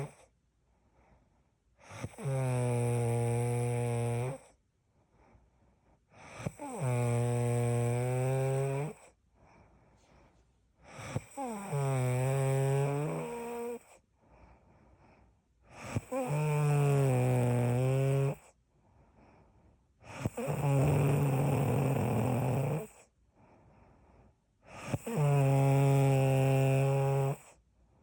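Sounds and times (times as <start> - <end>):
loud droning snoring: 0.0 - 0.2, 1.8 - 4.6, 6.2 - 9.1, 10.8 - 14.0, 15.7 - 18.6, 20.0 - 23.1, 24.7 - 27.6.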